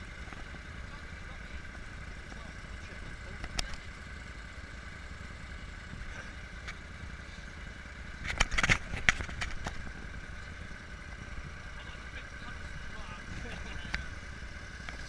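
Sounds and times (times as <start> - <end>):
off-road vehicle engine whine: 0.0 - 15.0.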